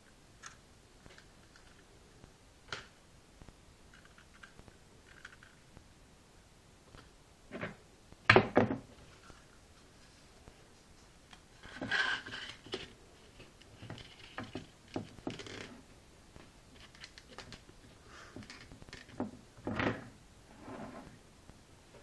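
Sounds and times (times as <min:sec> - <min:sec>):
objects knocking and rustling: 0:06.9 - 0:09.5, 0:11.6 - 0:15.8, 0:16.4 - 0:20.2.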